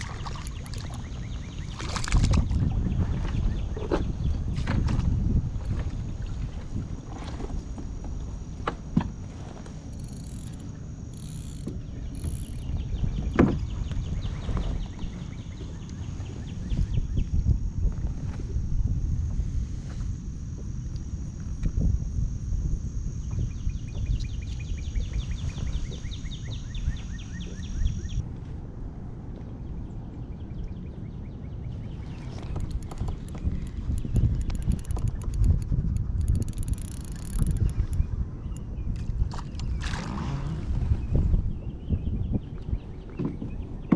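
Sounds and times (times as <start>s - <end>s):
wind rumbling on microphone: 0.0s - 43.9s
steady high-pitched tone: 4.5s - 28.3s
faint chirps: 6.0s - 28.2s
bird trilling: 6.8s - 13.3s, 22.4s - 28.2s.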